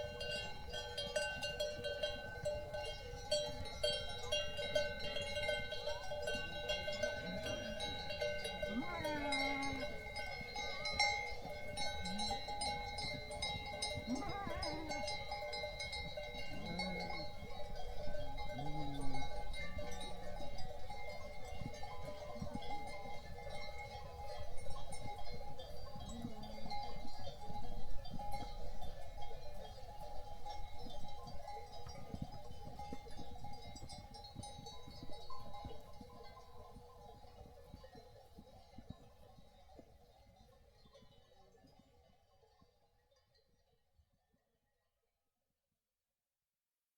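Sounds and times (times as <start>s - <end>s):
livestock bells ringing: 0.0s - 42.6s
sheep and goats bleating: 6.3s - 15.7s, 16.3s - 20.4s.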